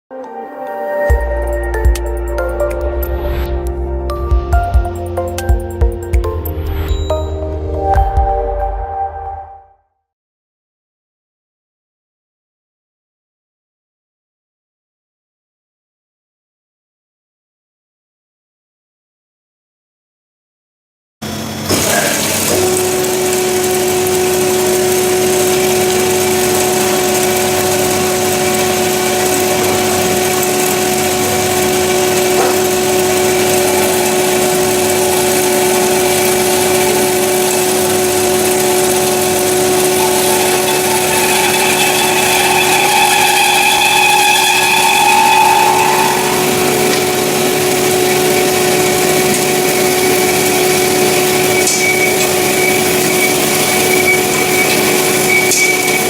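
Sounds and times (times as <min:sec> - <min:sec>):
high-pitched whine: 0:00.2 - 0:09.7, 0:22.5 - 0:56.0
metal band saw humming: 0:21.2 - 0:56.0.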